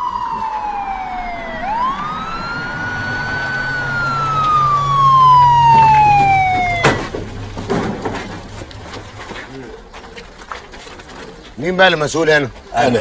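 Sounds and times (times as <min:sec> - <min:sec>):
police siren wailing: 0:00.0 - 0:08.5.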